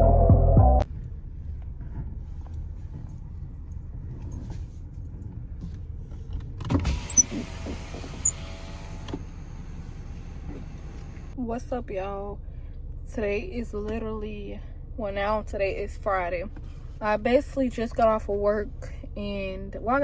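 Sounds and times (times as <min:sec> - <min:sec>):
car interior rumble: 0:00.8 - 0:20.0
power window motor: 0:06.7 - 0:11.4.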